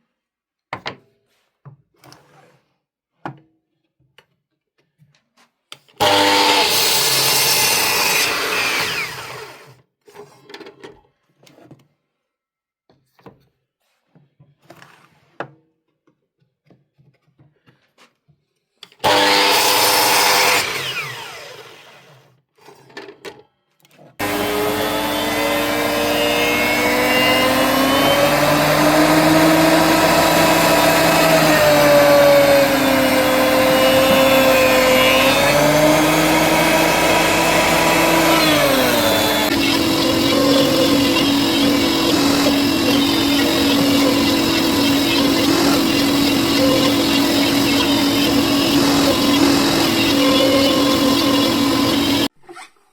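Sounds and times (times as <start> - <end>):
power tool motor running: 6.0 - 9.7, 19.0 - 22.1, 24.2 - 52.3.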